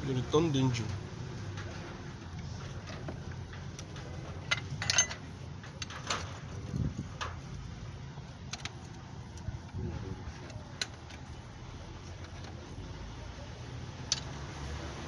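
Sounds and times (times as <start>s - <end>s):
metallic clicks of tools: 14.1s - 14.4s.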